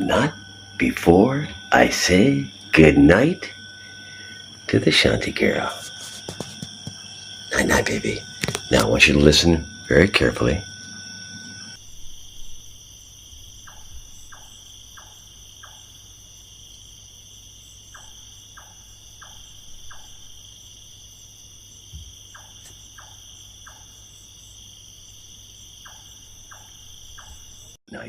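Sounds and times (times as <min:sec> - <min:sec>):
crickets chirring: 0:00.0 - 0:28.0.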